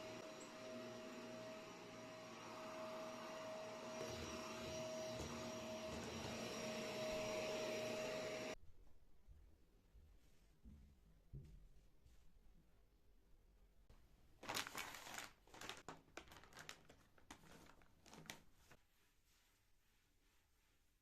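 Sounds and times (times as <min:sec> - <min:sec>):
vacuum cleaner running: 0:00.0 - 0:08.6.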